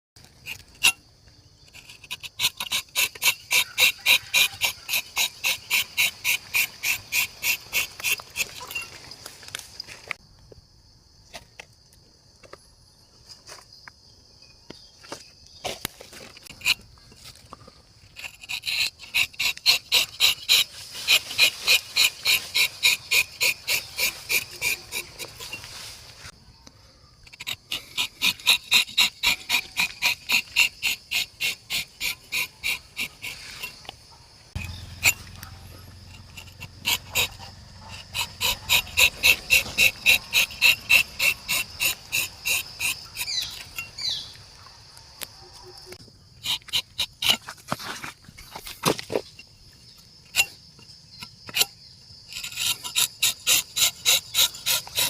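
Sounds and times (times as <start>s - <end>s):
steady high insect buzz: 0.2s - 47.6s, 48.2s - 55.0s
insect high-pitched pulsing call: 18.5s - 47.4s.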